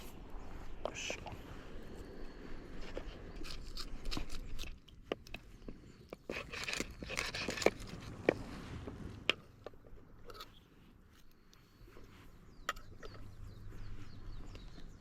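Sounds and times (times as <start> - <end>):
knife cutting and scraping fish: 3.1 - 5.3, 6.1 - 8.5.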